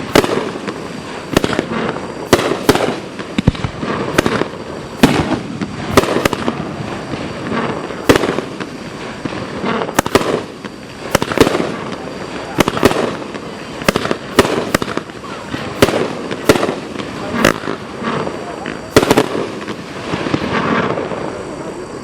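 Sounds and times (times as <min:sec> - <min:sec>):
fireworks bangs: 0:00.0 - 0:22.0
fireworks crackling and hissing: 0:00.0 - 0:22.0.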